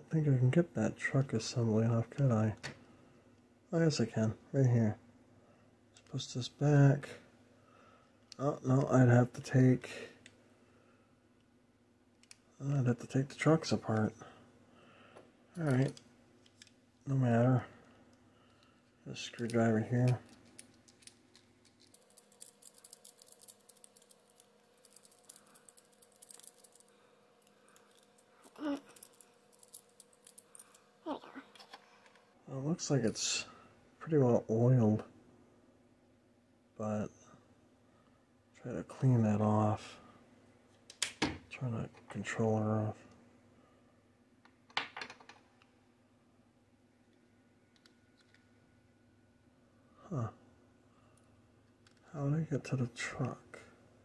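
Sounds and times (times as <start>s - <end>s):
faint steady hum: 0.0s - 54.0s
small parts clicking and tapping: 15.5s - 16.8s, 17.8s - 30.9s, 44.4s - 45.7s, 47.0s - 48.5s, 51.2s - 52.1s.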